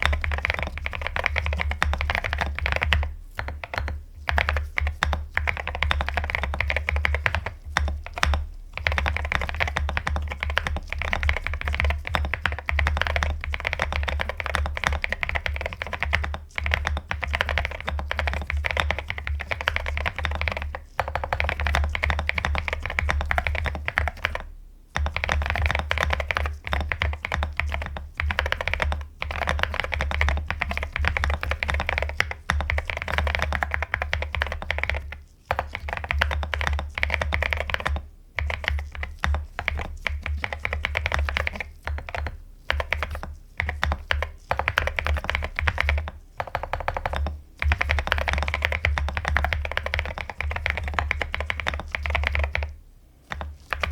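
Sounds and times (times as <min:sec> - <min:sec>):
fast mechanical keyboard typing: 0:00.0 - 0:52.7, 0:53.3 - 0:53.9.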